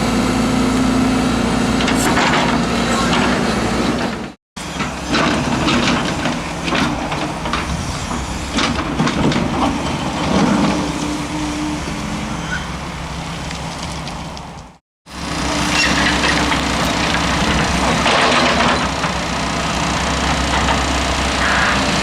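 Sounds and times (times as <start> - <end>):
diesel engine drone: 0.0 - 22.0
machine clanks and knocks: 1.8 - 10.9, 15.8 - 19.4, 20.1 - 21.1.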